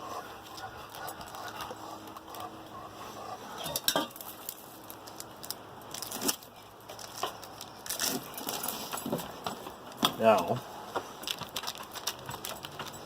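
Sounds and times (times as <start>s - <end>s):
cooking gear clinking and knocking: 3.6s - 4.4s
packaging crinkling and rustling: 4.2s - 13.0s.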